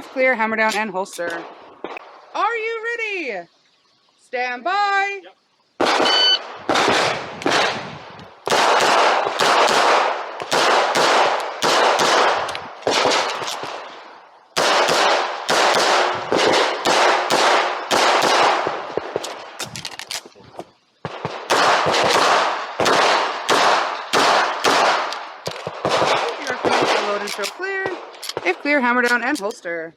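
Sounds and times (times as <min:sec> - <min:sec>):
handgun shots: 0:08.5 - 0:13.8, 0:14.6 - 0:20.2.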